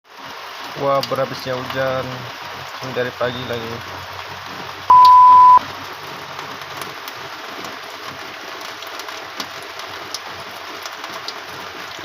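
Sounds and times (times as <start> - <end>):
heavy rain falling: 0.1 - 4.9, 5.6 - 12.0
loud electronic beep: 4.9 - 5.6.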